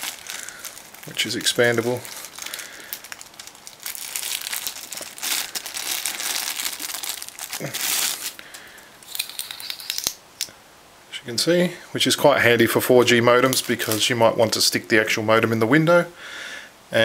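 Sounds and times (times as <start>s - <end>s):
plastic packaging crinkling: 0.0s - 10.2s, 13.0s - 14.8s.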